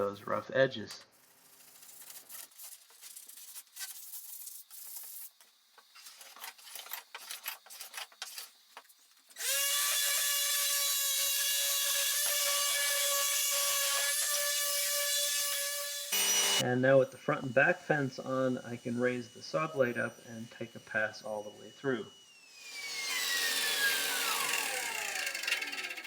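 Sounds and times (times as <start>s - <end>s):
sandpaper rubbing on wood: 1.2s - 5.4s
table saw running: 9.4s - 26.0s.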